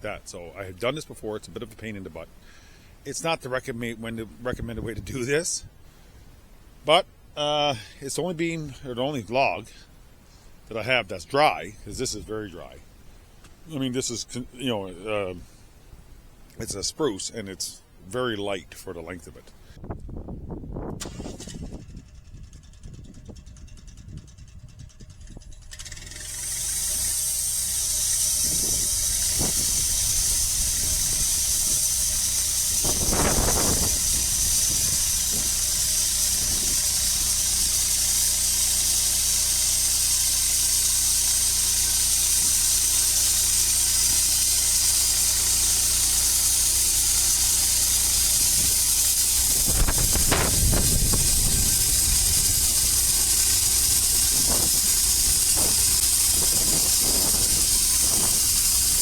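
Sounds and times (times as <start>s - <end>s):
low machine hum: 22.0s - 59.0s
saw blade hissing in wood: 26.0s - 59.0s.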